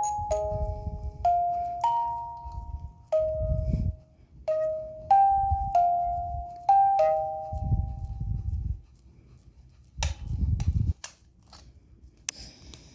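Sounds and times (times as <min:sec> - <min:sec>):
music box notes ringing: 0:00.0 - 0:03.7, 0:04.5 - 0:07.7.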